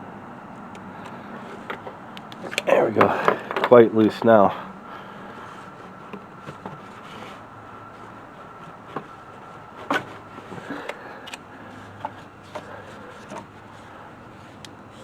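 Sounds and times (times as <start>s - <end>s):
hand tools clicking and knocking: 12.0s - 13.5s.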